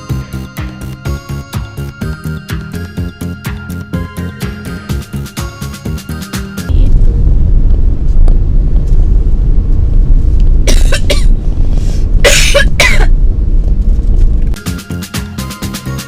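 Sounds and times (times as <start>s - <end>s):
vehicle rumble: 6.7s - 14.6s
woman coughing: 10.7s - 11.4s, 12.2s - 13.2s.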